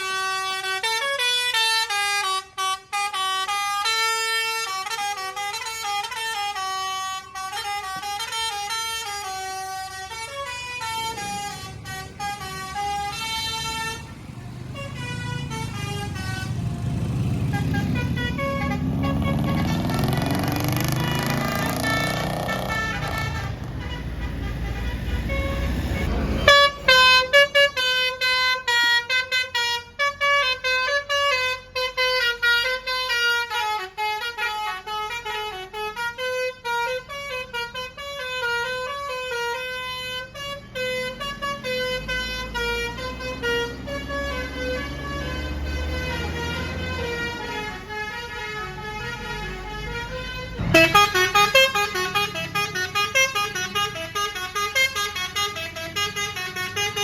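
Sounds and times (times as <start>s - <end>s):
multi-tone musical bus horn: 0.0s - 57.0s.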